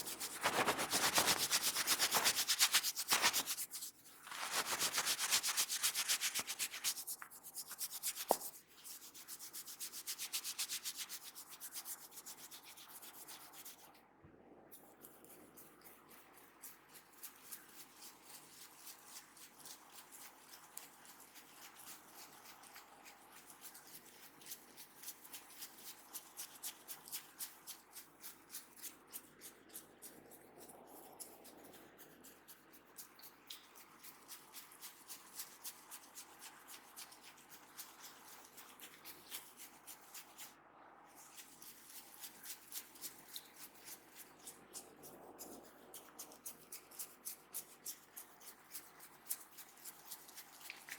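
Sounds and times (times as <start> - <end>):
hands stroking scalp and hair: 0.0 - 13.9, 32.8 - 40.5, 41.2 - 50.9.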